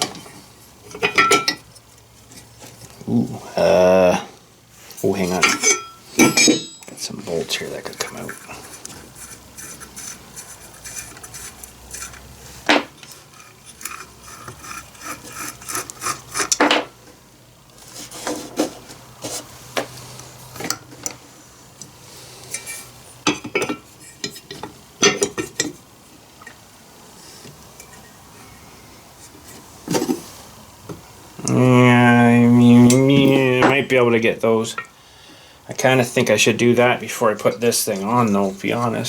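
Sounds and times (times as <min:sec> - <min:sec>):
metal tools clinking: 0:00.9 - 0:01.6, 0:05.4 - 0:07.1
metal scraping: 0:05.2 - 0:16.6.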